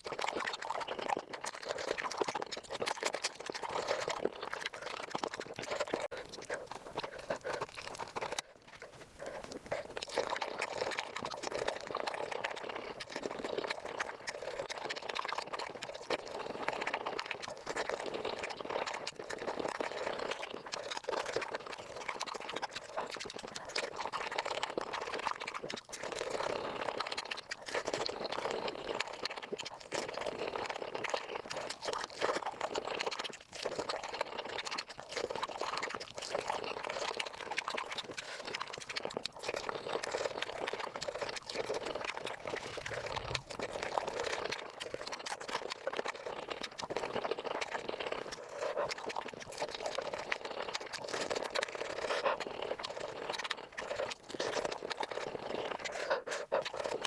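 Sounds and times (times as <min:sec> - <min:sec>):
wet chewing and crunching: 0:00.0 - 0:57.0.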